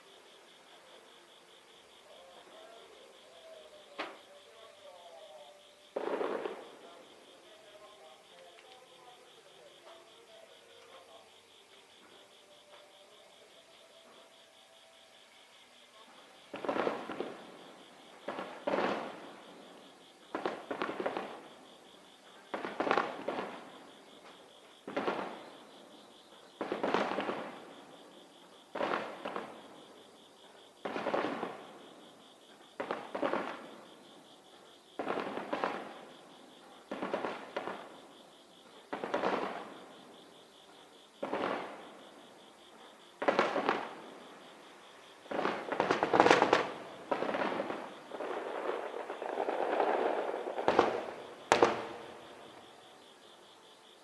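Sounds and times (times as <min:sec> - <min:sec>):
firework shells bursting: 0:45.3 - 0:52.6.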